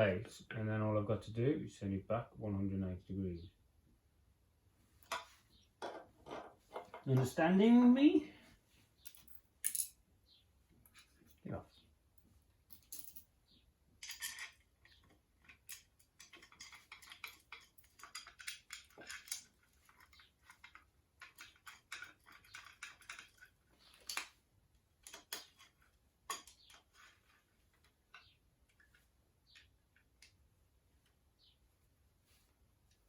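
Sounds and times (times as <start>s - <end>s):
metal tools clicking and clinking: 9.0s - 10.0s, 12.7s - 13.3s, 14.0s - 24.3s, 25.0s - 27.1s.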